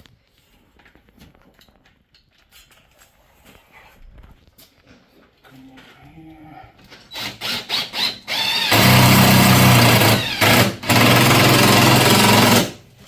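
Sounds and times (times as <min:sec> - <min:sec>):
impact driver hammering: 0:07.5 - 0:12.8.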